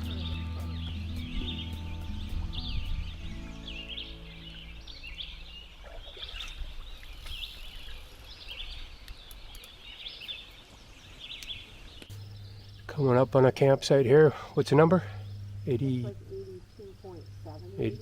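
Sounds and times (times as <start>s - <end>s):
background music: 0.0s - 5.4s
small birds chirping: 0.0s - 18.0s.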